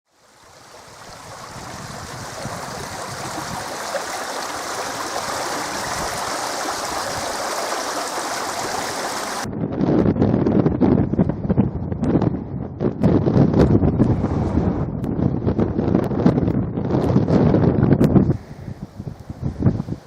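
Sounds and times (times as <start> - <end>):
steady rushing noise: 0.5 - 9.5
wind buffeting microphone: 0.5 - 20.0.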